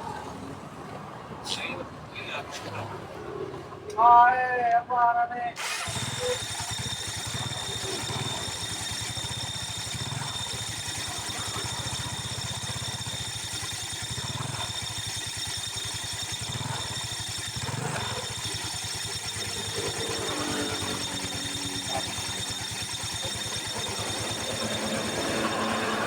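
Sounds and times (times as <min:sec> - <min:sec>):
scooter engine idling: 0:05.6 - 0:26.0.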